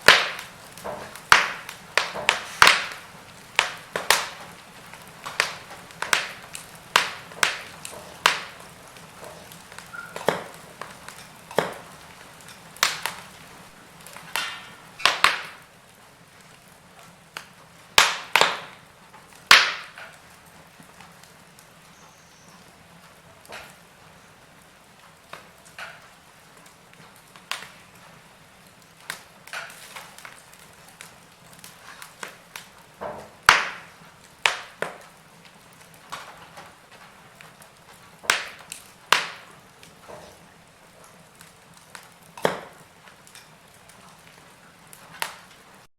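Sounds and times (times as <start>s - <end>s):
faint fire hiss: 0.0s - 45.9s
fire crackling and popping: 0.0s - 45.9s.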